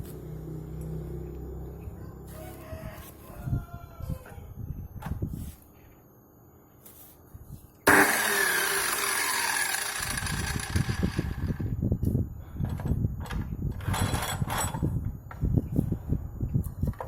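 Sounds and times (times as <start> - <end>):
cut-off saw whine: 7.9 - 11.8.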